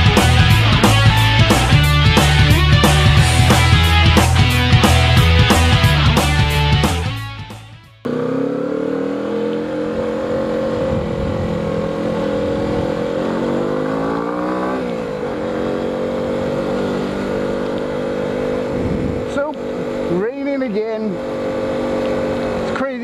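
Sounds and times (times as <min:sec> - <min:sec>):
motorcycle engine running: 0:00.0 - 0:23.0
wind and wet road hiss: 0:15.2 - 0:20.2.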